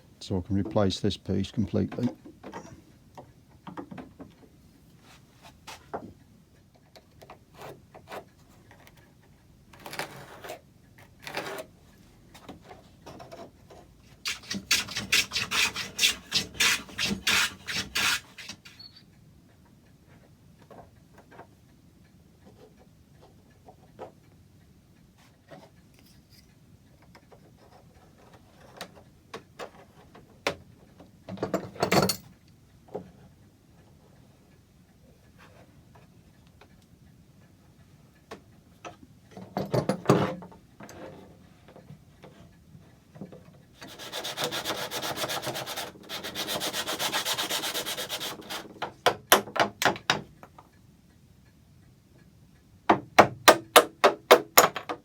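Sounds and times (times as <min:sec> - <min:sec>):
hand rubbing strokes on wood: 0:14.3 - 0:18.8.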